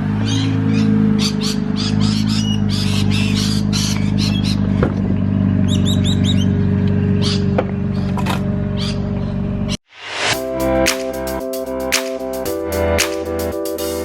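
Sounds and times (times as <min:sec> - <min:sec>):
birds chirping and squawking: 0:00.0 - 0:09.4
car engine idling: 0:00.0 - 0:09.8.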